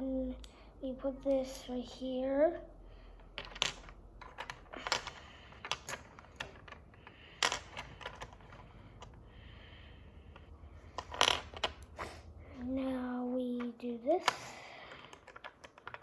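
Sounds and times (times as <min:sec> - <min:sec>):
plastic toy pieces clicking: 0:03.2 - 0:09.2, 0:10.3 - 0:12.0, 0:13.6 - 0:16.0.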